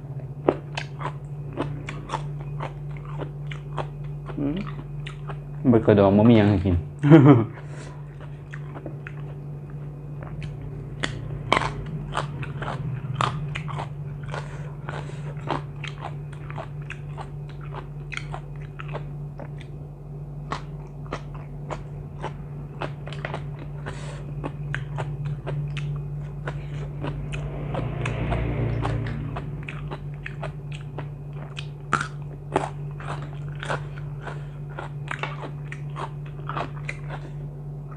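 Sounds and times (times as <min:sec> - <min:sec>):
person chewing crunchy food: 0:00.0 - 0:05.6, 0:07.5 - 0:37.9
steady low hum: 0:00.0 - 0:37.9.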